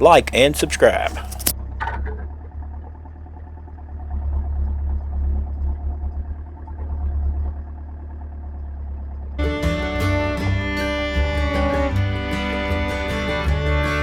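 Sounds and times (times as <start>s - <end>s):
backhoe engine idling: 0.0s - 14.0s
fiddle and guitar music: 9.4s - 14.0s.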